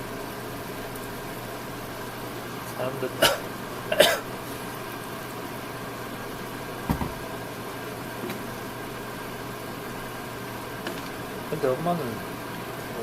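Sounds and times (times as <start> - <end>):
low mechanical hum: 0.0 - 13.0
single knock: 6.9 - 7.2.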